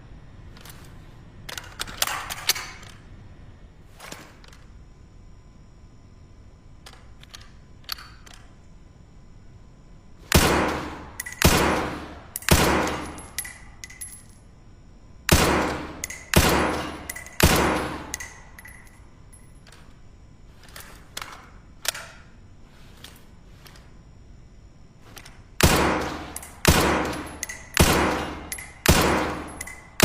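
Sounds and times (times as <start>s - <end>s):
muffled suppressed rifle shots: 10.3s - 13.2s, 15.3s - 18.3s, 25.6s - 29.8s
light metallic tinks: 29.4s - 30.0s.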